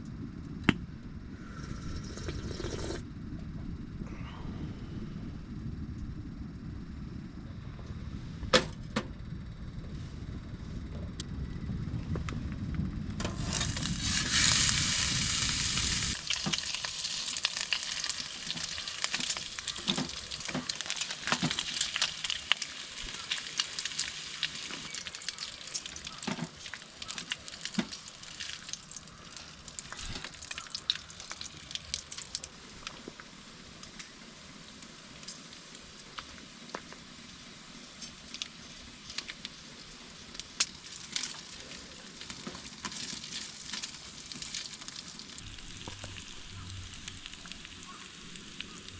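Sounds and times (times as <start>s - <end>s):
food sizzling in a pan: 13.3s - 32.4s.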